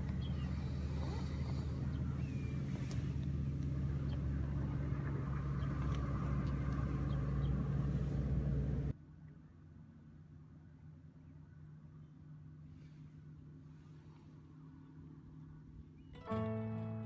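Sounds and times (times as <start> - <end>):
vehicle engine droning: 0.0 - 9.0, 15.3 - 17.0.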